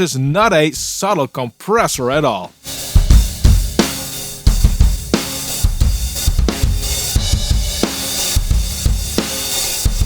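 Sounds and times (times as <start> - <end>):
kick drum hits: 2.9 - 6.8.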